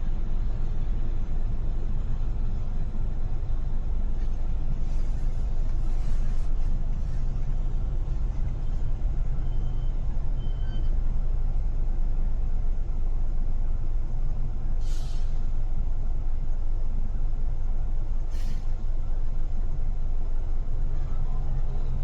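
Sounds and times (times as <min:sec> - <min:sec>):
city traffic rumble: 0:00.0 - 0:22.0
faint high beeps: 0:09.3 - 0:11.0
sharp hiss: 0:14.8 - 0:15.5, 0:18.3 - 0:18.8.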